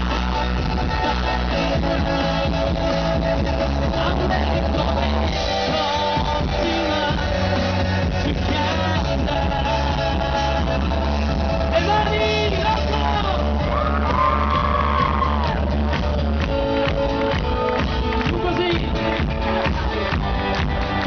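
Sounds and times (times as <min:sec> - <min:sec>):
person singing: 0:00.0 - 0:15.6
live rock band: 0:00.0 - 0:21.0.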